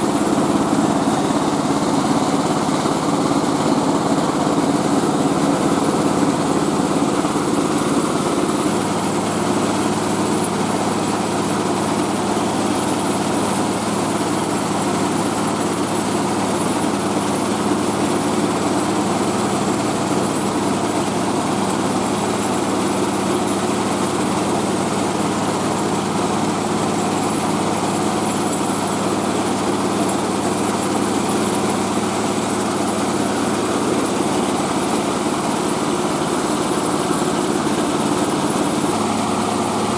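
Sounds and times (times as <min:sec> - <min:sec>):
milling machine droning: 0:31.1 - 0:39.9.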